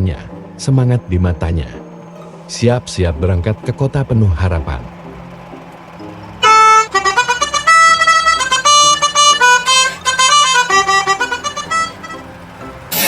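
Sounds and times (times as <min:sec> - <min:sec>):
multi-tone bus horn melody: 0:00.0 - 0:13.0.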